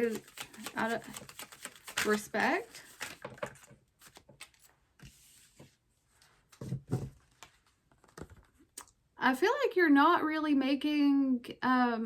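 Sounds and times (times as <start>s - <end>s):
card rustle: 0.0s - 5.6s.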